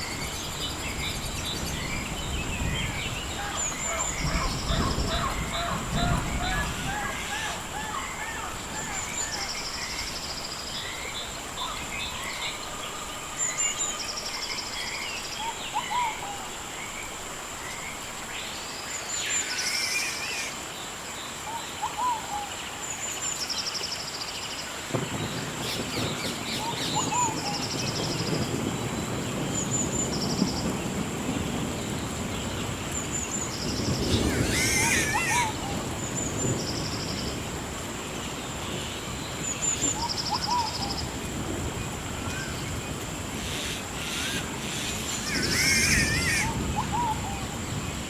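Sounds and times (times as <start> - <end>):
bird calls and chirps: 42.3 - 47.5
high-pitched insect drone: 43.4 - 46.6.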